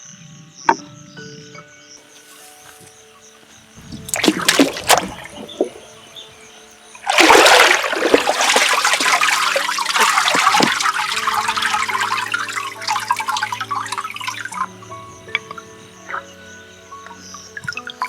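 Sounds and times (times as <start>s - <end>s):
water pouring: 3.8s - 6.4s, 7.0s - 15.6s
water splashing: 3.8s - 16.3s, 17.5s - 18.0s.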